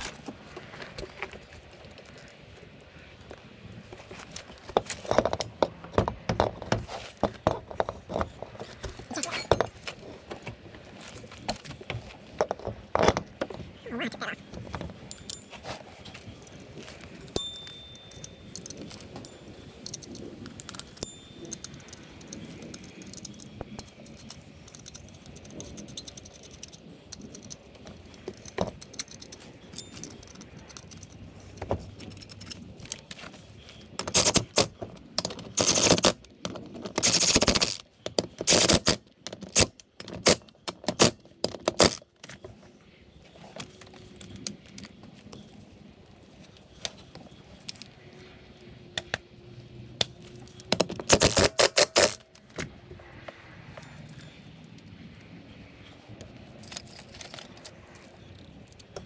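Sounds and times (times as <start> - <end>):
metal tools clinking and rattling: 4.2 - 42.4, 56.3 - 59.0.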